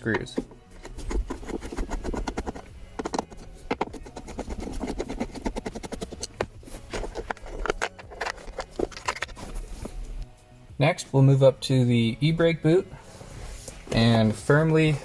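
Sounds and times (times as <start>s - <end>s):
screwdriver clicks and scrapes: 0.0s - 9.6s.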